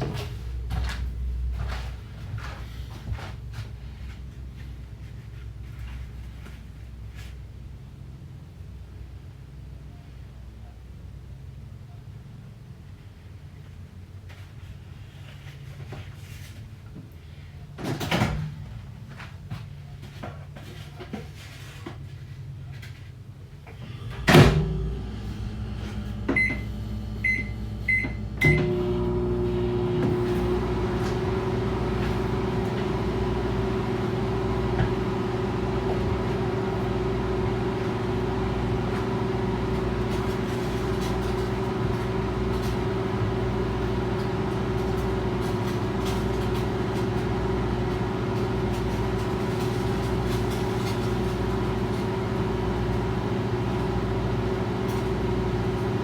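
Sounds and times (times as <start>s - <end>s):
microwave oven humming: 23.7s - 56.0s.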